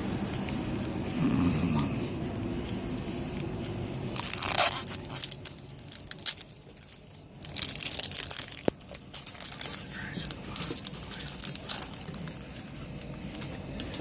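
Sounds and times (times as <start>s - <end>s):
foil wrapper tearing and crinkling: 4.2s - 12.5s.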